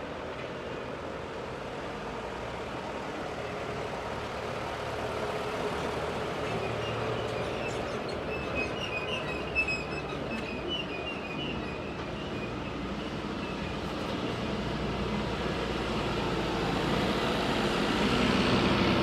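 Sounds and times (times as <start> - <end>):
rumble of passing vehicles: 0.0 - 19.0.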